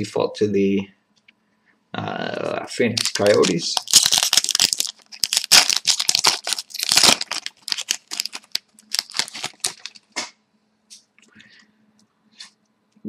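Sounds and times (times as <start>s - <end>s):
wrapper crinkling and tearing: 2.9s - 10.2s.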